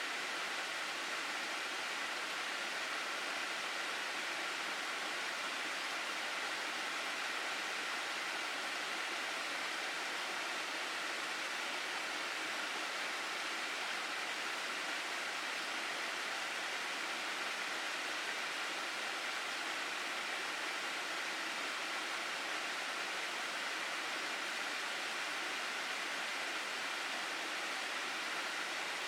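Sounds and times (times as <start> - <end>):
stream water rushing: 0.0 - 29.0.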